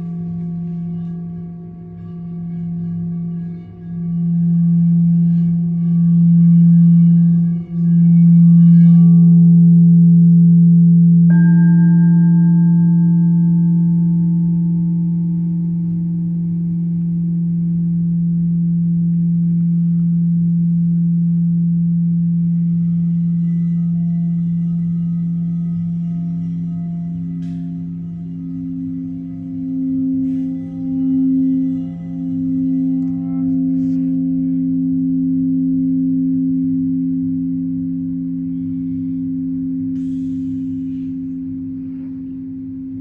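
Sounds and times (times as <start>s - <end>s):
singing bowls droning: 0.0s - 43.0s
struck bowl ringing: 21.5s - 35.2s.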